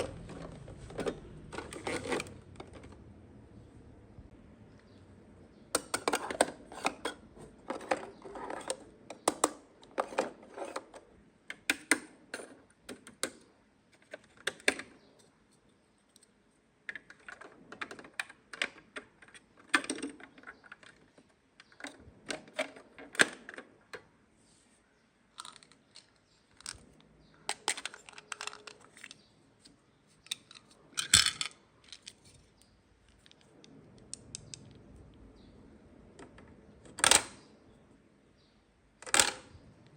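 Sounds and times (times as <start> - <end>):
plastic toy pieces clicking: 25.4 - 26.8, 27.5 - 29.2.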